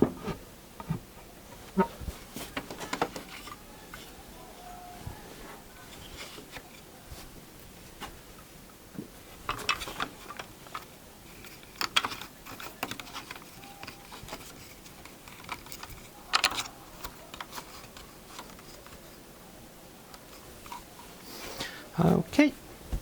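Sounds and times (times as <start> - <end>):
wood and tools clicking and knocking: 0.0 - 4.2, 9.0 - 19.3, 20.1 - 21.1.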